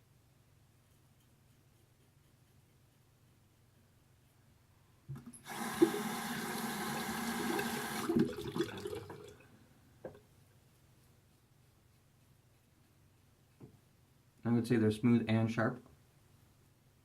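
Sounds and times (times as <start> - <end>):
tap water running into sink: 5.1 - 9.4.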